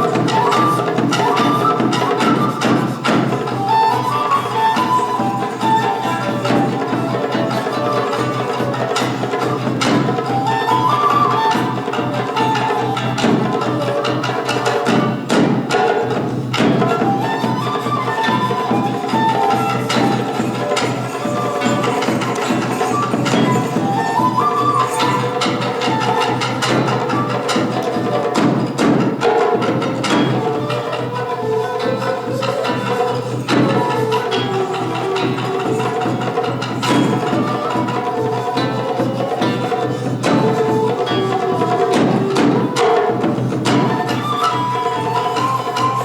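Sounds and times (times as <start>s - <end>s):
drum strikes: 0.0s - 44.2s
melody over percussion: 0.0s - 46.0s
taiko drum strikes: 11.8s - 17.4s, 19.1s - 31.2s.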